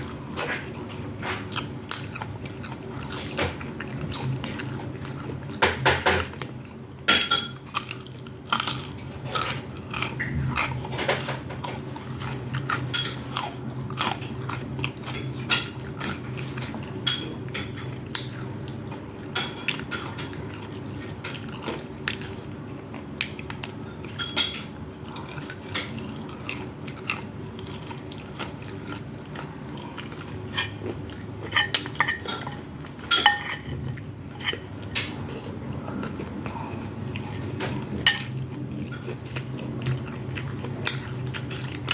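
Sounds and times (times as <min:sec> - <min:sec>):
chewing food: 0:00.0 - 0:41.9
steady low hum: 0:00.0 - 0:41.9
utensils clinking on a plate: 0:07.1 - 0:07.8, 0:08.6 - 0:18.3, 0:19.3 - 0:21.8, 0:24.0 - 0:26.1, 0:30.2 - 0:35.5, 0:37.2 - 0:40.0.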